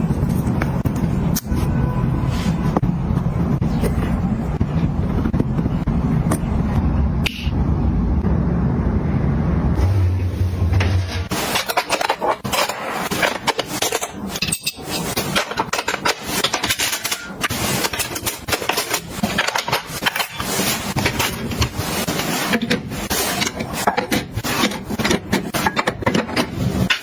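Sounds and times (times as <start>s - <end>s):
small items clinking and scraping: 11.2s - 27.0s.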